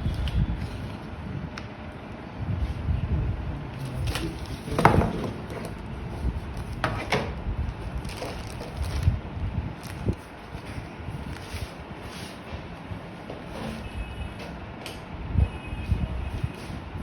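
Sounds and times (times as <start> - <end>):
low microphone rumble: 2.2 - 13.1
handling knocks and clatters: 4.0 - 5.8.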